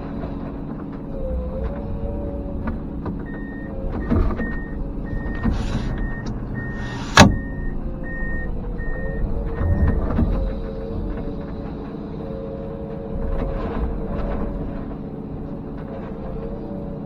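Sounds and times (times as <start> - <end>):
excavator running: 0.0 - 17.0
travel alarm beeping: 3.3 - 10.1
short hisses: 5.4 - 6.0, 6.7 - 7.4.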